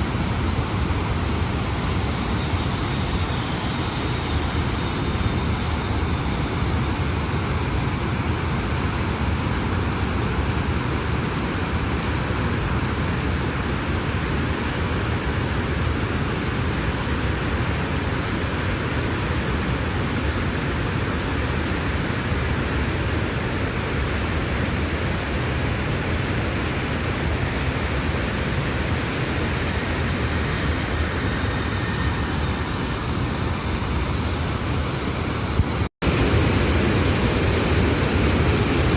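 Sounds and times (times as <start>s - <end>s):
waterfall rushing: 35.7s - 38.9s.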